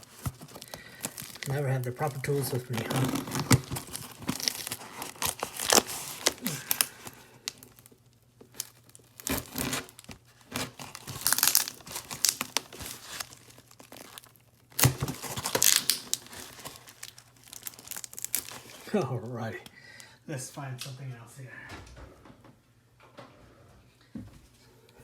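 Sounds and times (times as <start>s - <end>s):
cardboard box being torn open: 2.2s - 7.7s, 8.6s - 18.8s.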